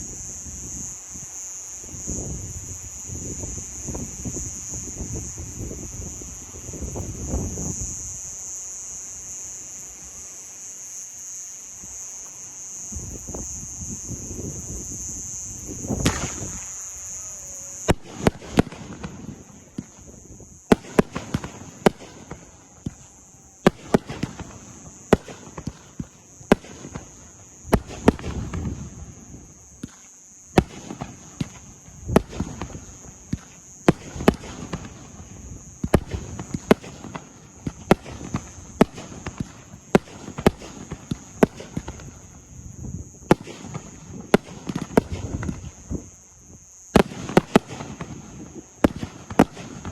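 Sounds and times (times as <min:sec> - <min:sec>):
fireworks bangs: 0:11.8 - 0:49.9.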